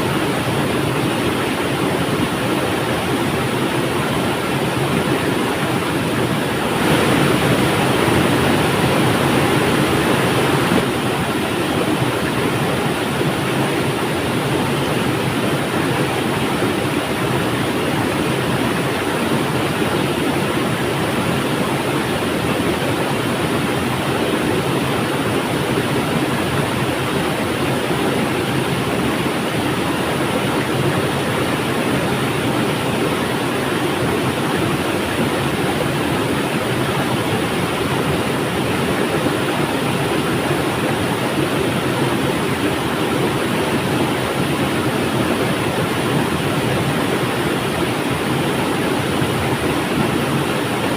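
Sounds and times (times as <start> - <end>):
river water rushing: 0.0 - 50.9.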